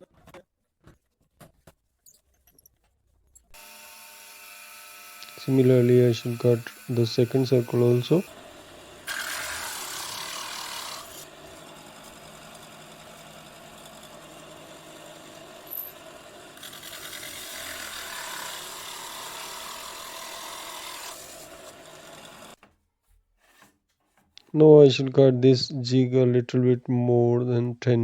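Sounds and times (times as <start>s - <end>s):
hole saw cutting wood: 3.6s - 22.6s.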